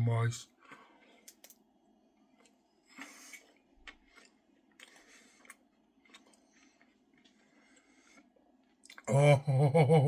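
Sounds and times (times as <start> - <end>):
person chewing cake: 2.2 - 9.1.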